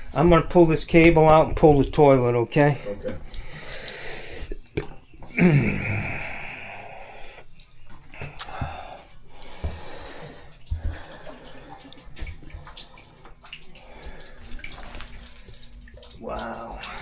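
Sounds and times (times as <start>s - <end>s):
water splashing in toilet: 9.5s - 17.0s.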